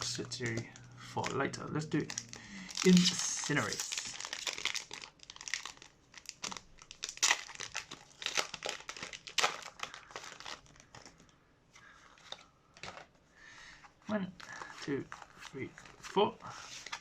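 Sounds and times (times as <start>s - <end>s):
foil wrapper crinkling and tearing: 0.0s - 11.3s.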